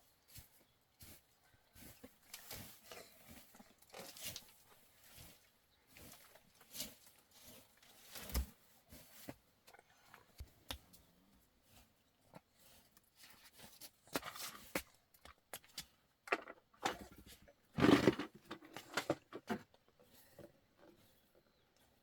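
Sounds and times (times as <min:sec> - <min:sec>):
scraping and rustling: 0:16.4 - 0:21.4.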